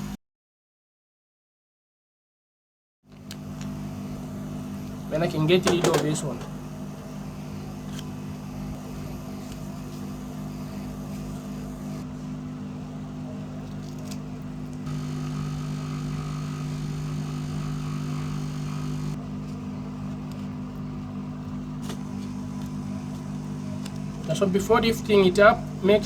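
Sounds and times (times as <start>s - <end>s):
blower humming: 3.1s - 26.0s
high whine: 14.9s - 19.2s.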